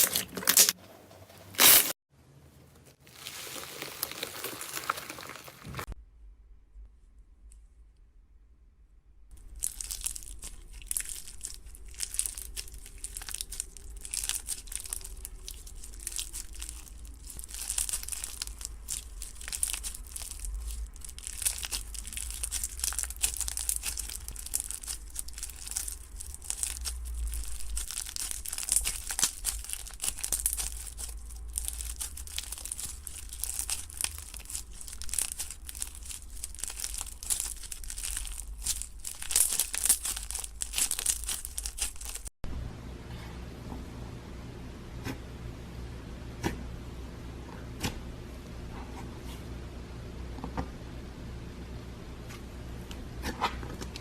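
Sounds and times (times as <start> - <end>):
slime crackling and popping: 3.0 - 5.9, 9.4 - 42.3.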